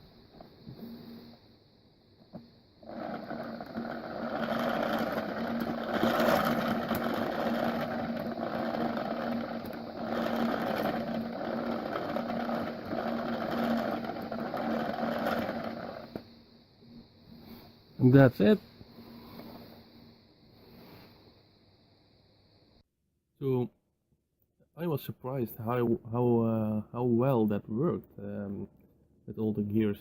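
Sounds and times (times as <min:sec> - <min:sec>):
gear driven fan whirring: 0:02.3 - 0:16.3.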